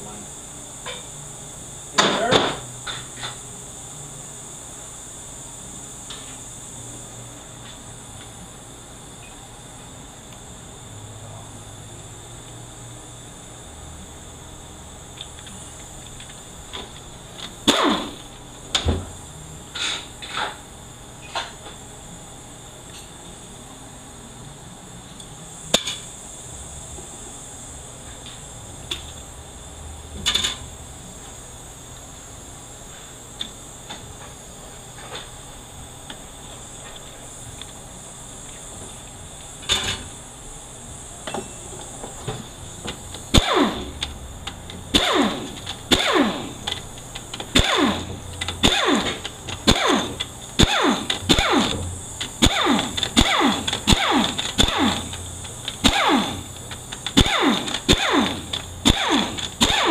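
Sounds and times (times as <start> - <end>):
power tool whirring out bolts: 15.4 - 19.0, 42.2 - 59.9.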